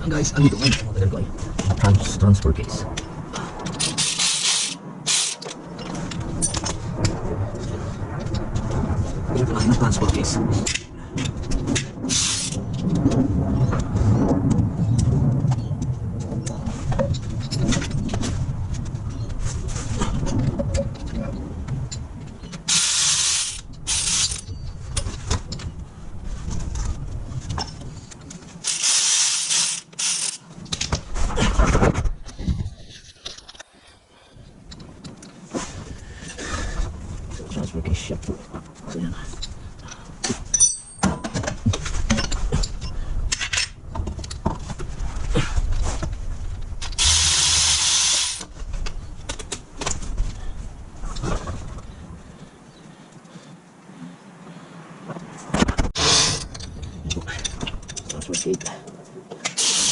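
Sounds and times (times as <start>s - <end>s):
hand tools and metal parts clinking: 3.6s - 6.8s, 12.1s - 13.0s, 21.9s - 25.8s, 26.5s - 31.0s, 39.3s - 44.8s, 46.8s - 50.1s, 55.9s - 59.9s
air ratchet hissing: 3.8s - 5.5s, 12.1s - 12.6s, 22.7s - 24.5s, 28.6s - 30.4s, 47.0s - 48.5s, 56.0s - 56.6s, 59.5s - 59.9s
metallic clinks of tools: 40.5s - 41.3s
power tool running: 47.0s - 48.4s, 59.6s - 59.9s.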